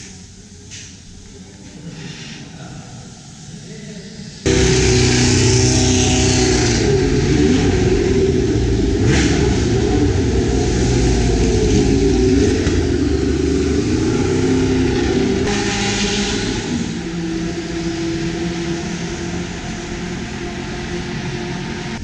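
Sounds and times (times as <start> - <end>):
racing car engine revving: 4.4 - 22.0.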